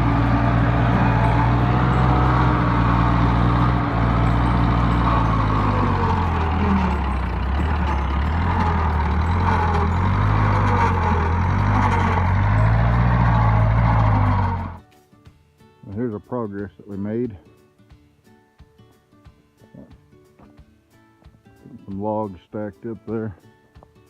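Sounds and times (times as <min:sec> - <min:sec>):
backhoe engine running hard: 0:00.0 - 0:14.8.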